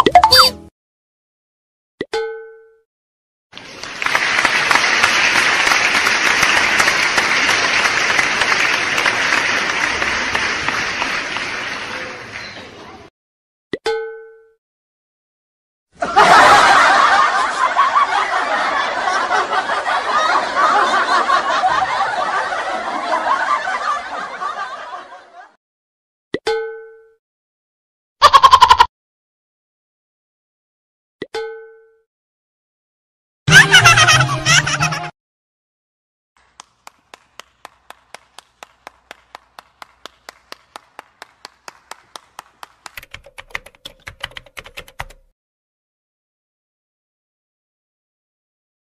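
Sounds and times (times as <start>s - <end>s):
people laughing: 16.0s - 25.6s, 33.5s - 35.1s.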